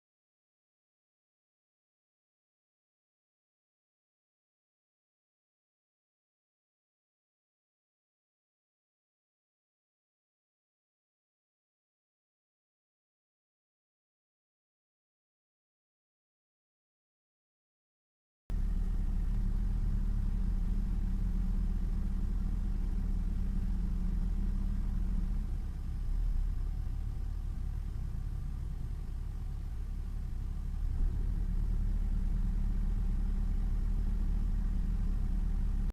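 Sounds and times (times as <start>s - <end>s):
car engine idling: 18.5s - 35.9s.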